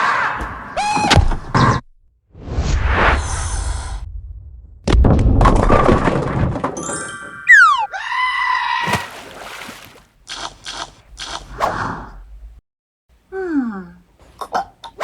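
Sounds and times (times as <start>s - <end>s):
wavering cry: 7.5s - 9.1s.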